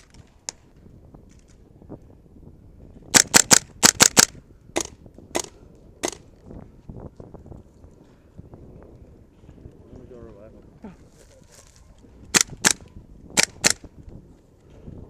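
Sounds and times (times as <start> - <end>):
airsoft gun firing: 3.1 - 6.2, 12.3 - 12.8, 13.4 - 13.8.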